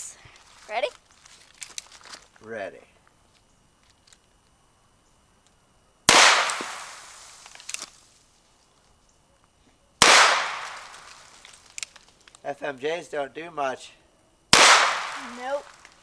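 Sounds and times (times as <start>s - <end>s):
revolver shots with echo: 6.1s - 7.1s, 10.0s - 11.2s, 14.6s - 15.8s.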